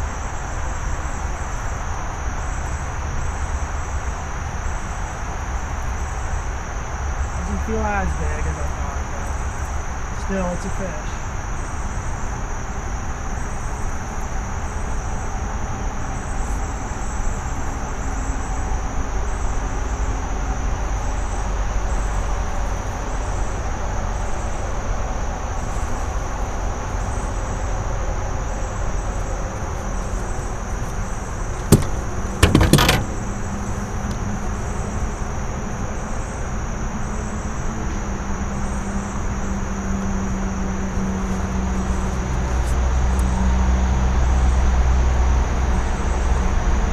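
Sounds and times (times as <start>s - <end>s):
night insects chirring: 0.0s - 46.9s
short sharp knocks: 31.6s - 33.2s.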